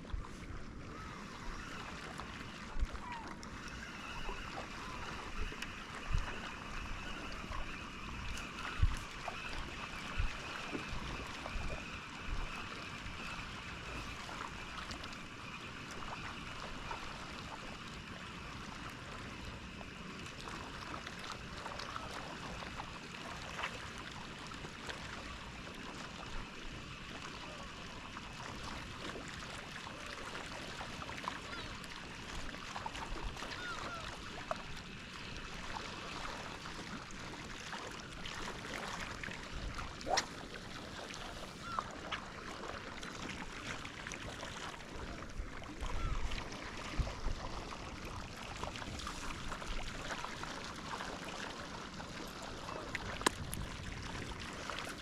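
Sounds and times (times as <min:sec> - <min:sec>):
water lapping and splashing: 0:00.0 - 0:55.0.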